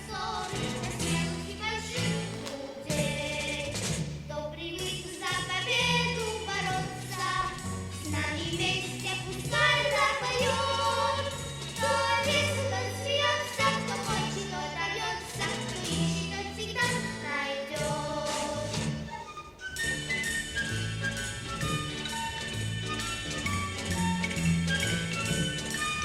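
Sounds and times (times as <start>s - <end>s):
people singing: 0.0s - 4.0s, 4.8s - 19.0s.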